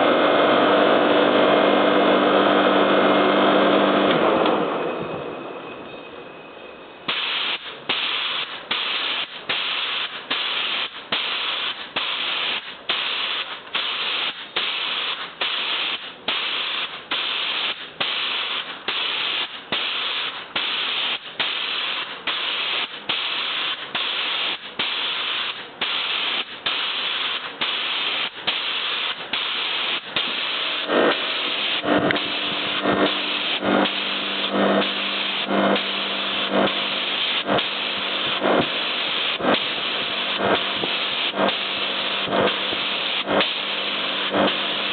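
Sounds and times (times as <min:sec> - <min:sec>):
compressed air hissing in pulses: 0:07.1 - 0:44.9
low pulsing hum: 0:27.0 - 0:44.9.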